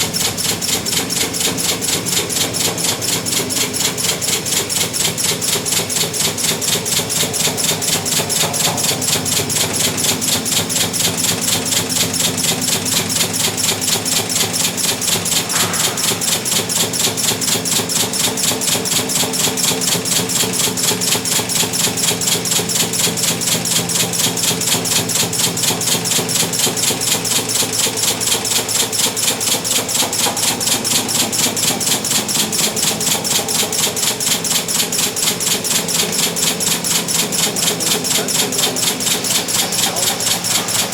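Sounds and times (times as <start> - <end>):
machine hum: 0.0 - 21.5, 30.2 - 40.9
weld pulses clicking: 0.0 - 40.9.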